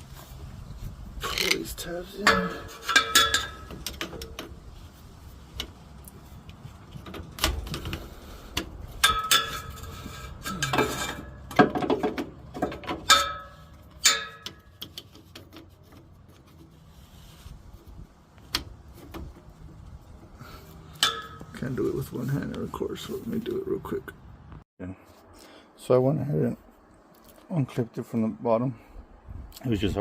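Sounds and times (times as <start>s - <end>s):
short metallic rings: 2.2s - 3.9s, 9.0s - 11.5s, 13.0s - 14.8s, 20.8s - 21.6s
clicks and rattles of handling: 5.5s - 16.7s.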